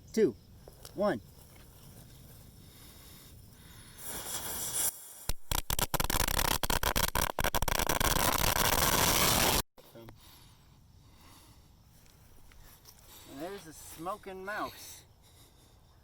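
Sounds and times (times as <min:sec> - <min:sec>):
fuse hissing: 0:03.7 - 0:05.4
firecrackers cracking: 0:04.0 - 0:09.6.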